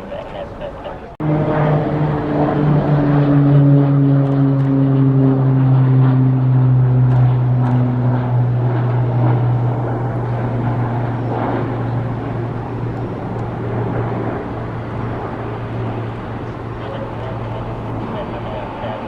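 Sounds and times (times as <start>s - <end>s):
jet engines humming: 0.0s - 19.0s.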